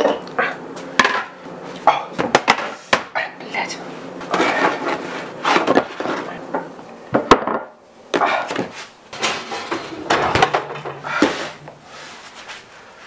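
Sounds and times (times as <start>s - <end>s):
kitchen items knocking and bumping: 1.0s - 1.3s, 2.2s - 3.0s, 4.3s - 11.8s.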